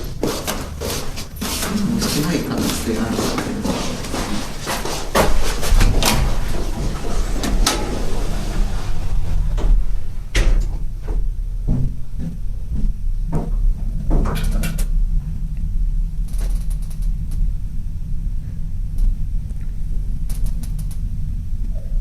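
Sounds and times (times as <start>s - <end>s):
elevator humming: 0.0s - 22.0s
elevator knocks and clunks: 0.0s - 22.0s.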